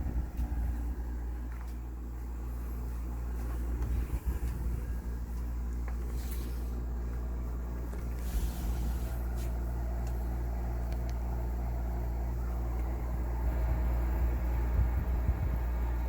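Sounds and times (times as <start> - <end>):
air conditioner humming: 0.0 - 16.0
low rumbles: 0.0 - 16.0.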